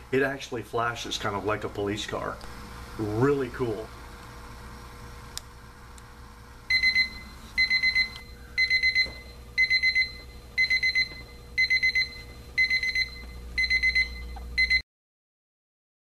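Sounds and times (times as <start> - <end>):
alarm clock beeping: 6.7 - 14.8.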